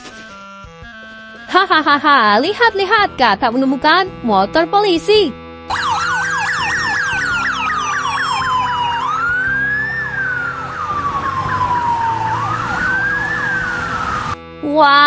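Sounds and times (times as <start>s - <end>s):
police siren wail: 5.7s - 14.4s
siren fast yelp: 5.7s - 14.4s.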